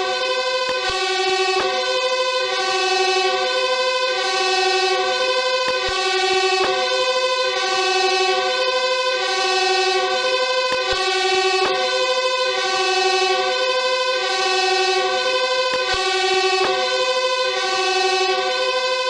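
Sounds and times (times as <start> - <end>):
siren holding a steady chord: 0.0 - 19.0.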